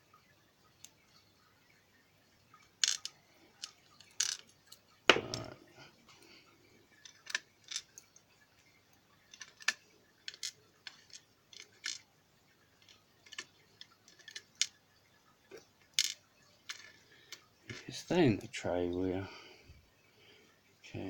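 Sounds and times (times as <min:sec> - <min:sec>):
small metallic clicks and taps: 0:02.6 - 0:05.6, 0:07.0 - 0:08.2, 0:09.3 - 0:12.1, 0:12.8 - 0:14.8.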